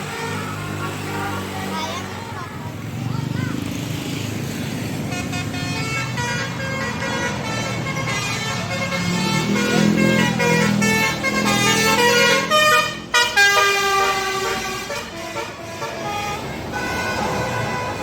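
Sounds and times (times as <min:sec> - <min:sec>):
bus horn playing a tune: 0:00.0 - 0:01.4, 0:05.0 - 0:18.0.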